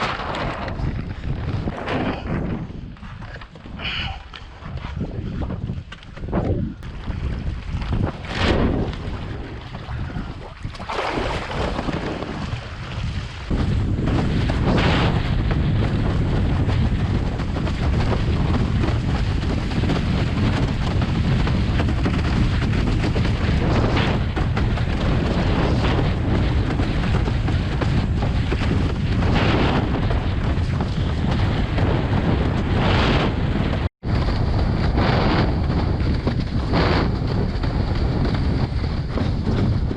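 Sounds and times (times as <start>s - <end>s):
wind buffeting microphone: 0.0s - 39.9s
rushing water: 6.8s - 13.5s.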